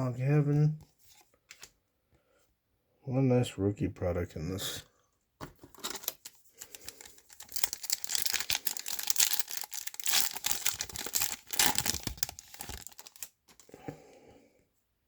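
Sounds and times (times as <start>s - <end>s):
foil wrapper tearing and crinkling: 6.0s - 13.6s.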